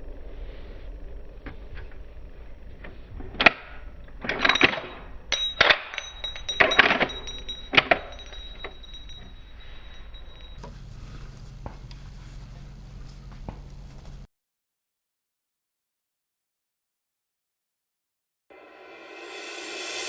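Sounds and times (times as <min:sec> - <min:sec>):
metallic clicks and clatters: 0:03.3 - 0:09.5.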